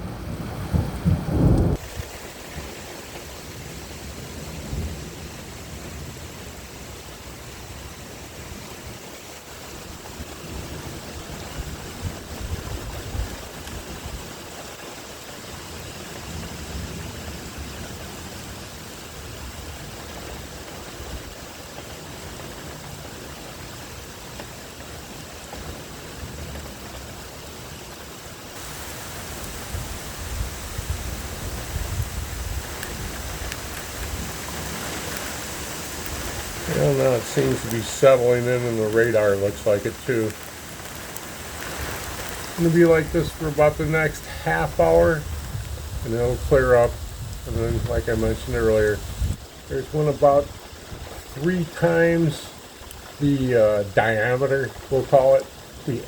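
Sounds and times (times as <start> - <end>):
thunder rumbles: 0.0 - 6.6, 8.6 - 14.8, 28.6 - 56.0
steady rain falling: 0.0 - 56.0.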